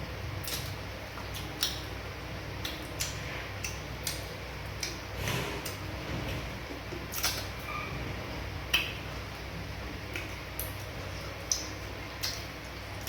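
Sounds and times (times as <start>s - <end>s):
low steady hum: 0.0s - 13.0s
mouth chewing wet smacks: 0.4s - 5.8s, 6.9s - 7.6s, 10.0s - 13.0s.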